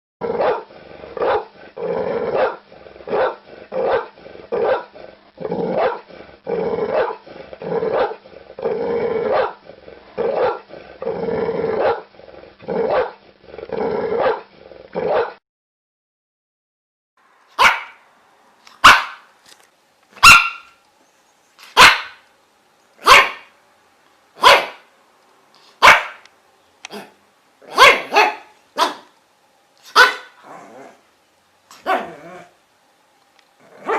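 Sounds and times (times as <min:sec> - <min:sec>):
dog barking: 0:00.4 - 0:01.5, 0:02.3 - 0:04.9, 0:05.8 - 0:06.1, 0:06.9 - 0:07.2, 0:07.9 - 0:08.2, 0:09.3 - 0:09.6, 0:10.3 - 0:10.6, 0:11.8 - 0:12.0, 0:12.9 - 0:13.2, 0:14.2 - 0:15.4, 0:17.6 - 0:18.0, 0:18.8 - 0:19.3, 0:20.2 - 0:20.8, 0:21.6 - 0:22.2, 0:23.0 - 0:23.5, 0:24.4 - 0:24.9, 0:25.8 - 0:26.2, 0:26.9 - 0:29.1, 0:29.9 - 0:30.4, 0:31.7 - 0:32.2.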